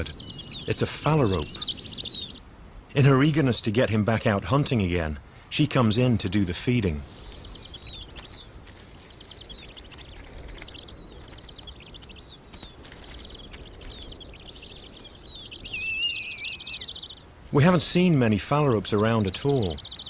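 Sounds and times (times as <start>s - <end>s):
owl chicks begging calls: 0.0s - 2.5s, 6.8s - 20.0s.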